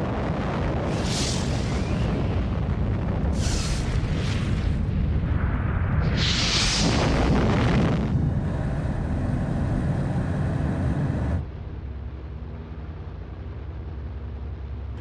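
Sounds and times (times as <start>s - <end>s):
explosion rumble: 0.1s - 9.9s.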